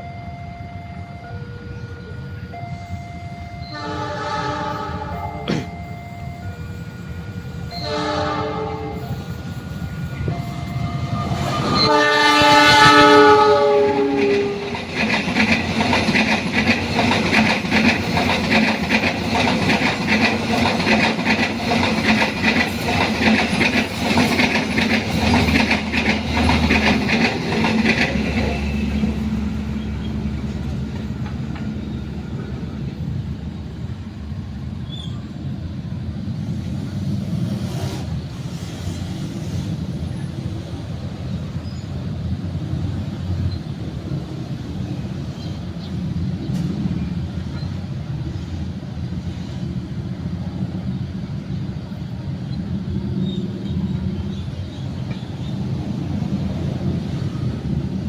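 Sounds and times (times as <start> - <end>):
train horn blasts: 3.0 - 5.9, 7.6 - 9.5, 10.3 - 14.9
train wheels clattering over rails: 9.2 - 35.1.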